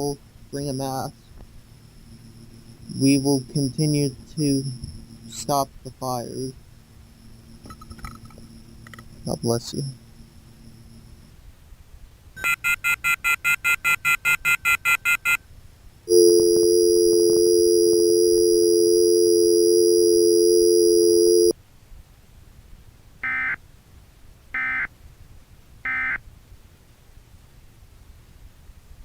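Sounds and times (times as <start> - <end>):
short data bursts: 0.0 - 11.3, 12.4 - 15.4, 16.1 - 21.5
two-note electronic alert tone: 16.1 - 21.5.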